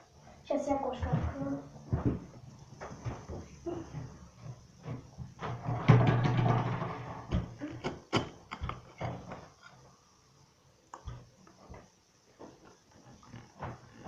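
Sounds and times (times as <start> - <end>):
clicks and knocks: 4.9 - 9.6.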